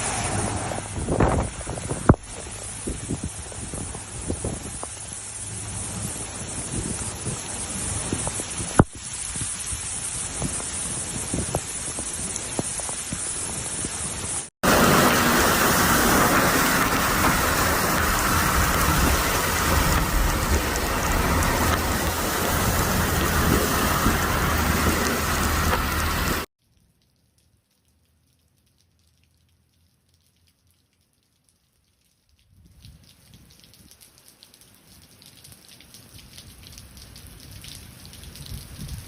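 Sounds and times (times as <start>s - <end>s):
heavy rain falling: 0.0s - 26.5s
rain drop clicks: 14.6s - 39.0s.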